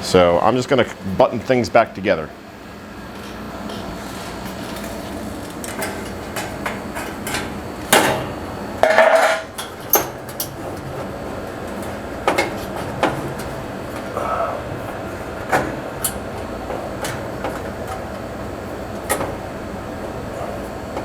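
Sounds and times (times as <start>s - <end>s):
sheet metal parts clanking: 3.2s - 21.0s
metallic clatter and scrape: 8.8s - 14.2s.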